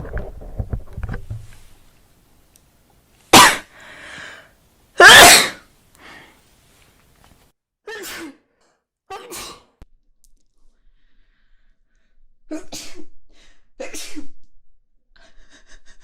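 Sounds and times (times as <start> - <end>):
woman sneezing: 5.0 - 5.6, 7.9 - 8.5, 9.1 - 9.8.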